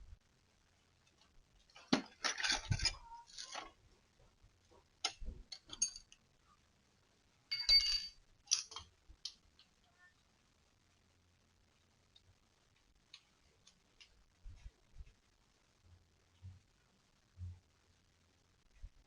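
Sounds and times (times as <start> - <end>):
small hard objects clinking: 7.5 - 8.8.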